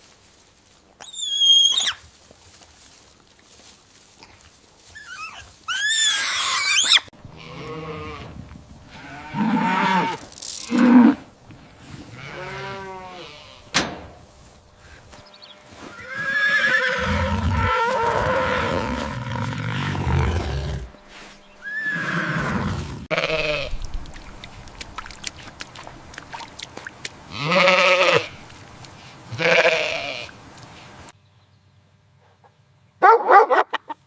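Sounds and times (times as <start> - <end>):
farm animals calling: 4.9 - 14.1, 14.8 - 23.8, 27.2 - 30.9, 32.4 - 34.0.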